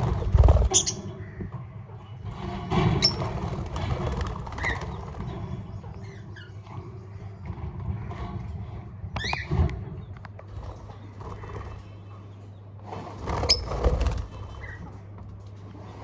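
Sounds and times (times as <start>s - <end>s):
parrots chirping: 0.5s - 1.1s.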